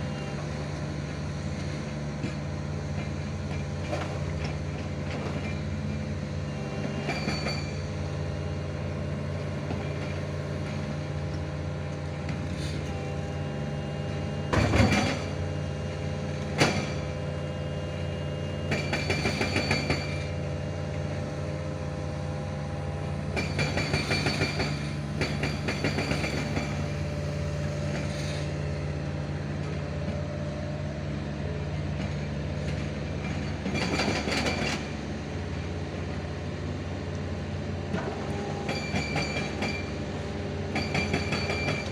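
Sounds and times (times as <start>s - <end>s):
diesel engine running: 0.0s - 41.9s
metallic clanking and squealing: 5.3s - 8.0s, 38.2s - 40.0s.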